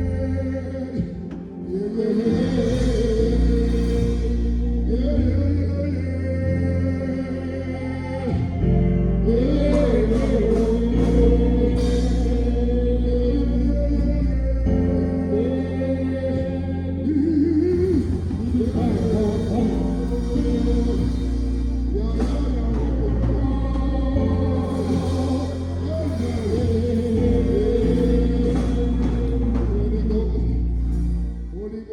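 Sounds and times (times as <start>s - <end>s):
person singing: 0.0s - 31.9s
steady bass: 0.0s - 31.9s.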